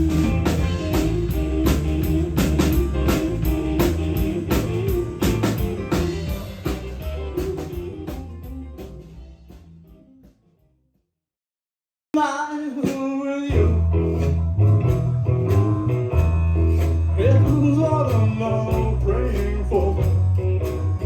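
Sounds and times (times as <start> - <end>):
bass and drums beat: 0.0 - 10.4, 12.7 - 21.0
guitar line: 0.0 - 10.4.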